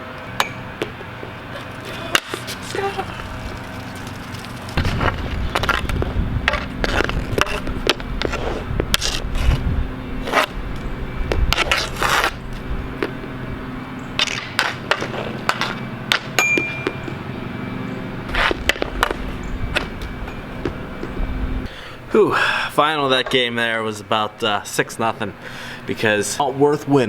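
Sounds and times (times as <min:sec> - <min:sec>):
sticks clacking and scraping: 0:01.5 - 0:04.9.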